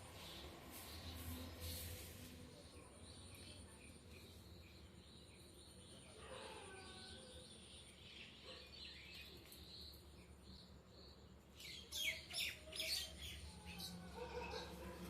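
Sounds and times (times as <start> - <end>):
background hiss: 0.0 - 6.0.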